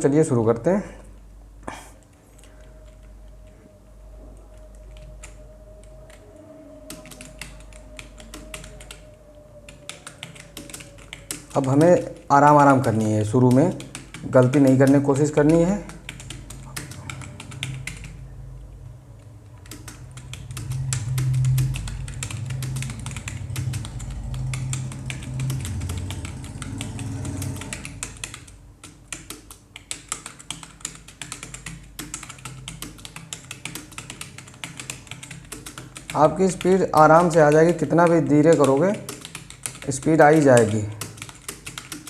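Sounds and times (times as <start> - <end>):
low hum: 0.9 - 28.9
computer keyboard typing: 2.0 - 3.6, 4.4 - 18.7, 19.4 - 42.0.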